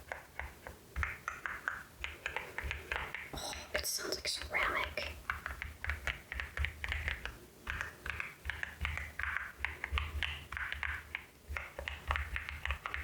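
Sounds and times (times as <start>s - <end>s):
mechanical keyboard keys clacking: 5.3s - 13.0s.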